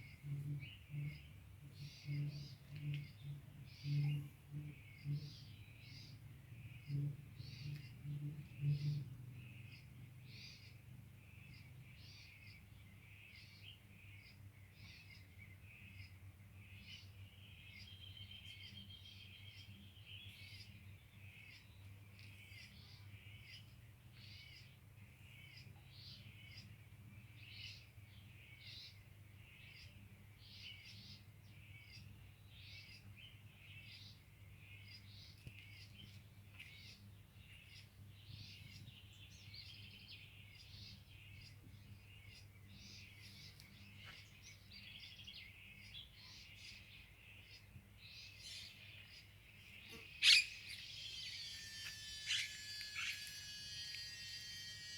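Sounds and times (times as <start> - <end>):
small birds chirping: 0.0 - 54.9
low steady hum: 49.9 - 54.9.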